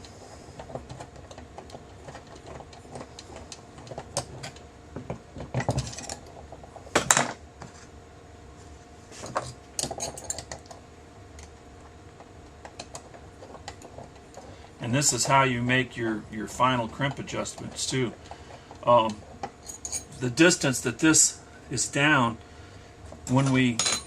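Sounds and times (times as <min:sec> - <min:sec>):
faint steady hum: 0:00.0 - 0:24.0
small steel parts clinking: 0:19.6 - 0:20.2.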